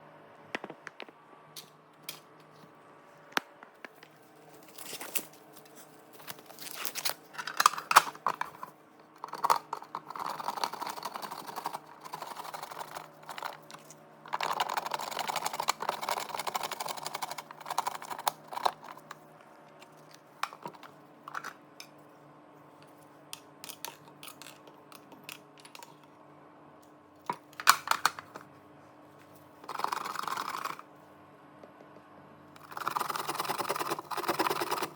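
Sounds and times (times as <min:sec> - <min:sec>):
faint steady hum: 0:00.0 - 0:34.9
rustling and scraping: 0:03.9 - 0:08.8.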